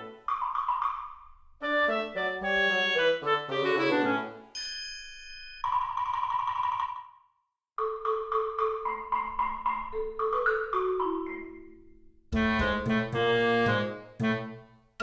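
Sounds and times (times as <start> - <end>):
mallet percussion notes: 7.8 - 13.5.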